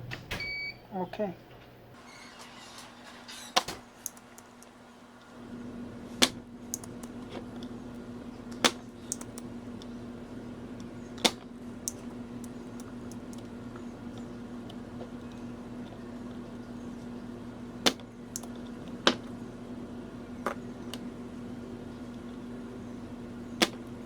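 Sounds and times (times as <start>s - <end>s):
bench device humming: 0.0s - 24.0s
tools clicking on workbench: 3.5s - 4.7s.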